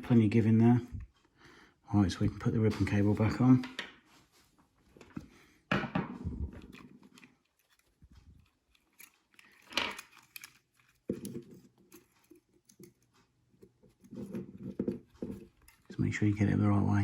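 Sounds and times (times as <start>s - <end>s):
plastic parts clicking: 6.4s - 16.3s.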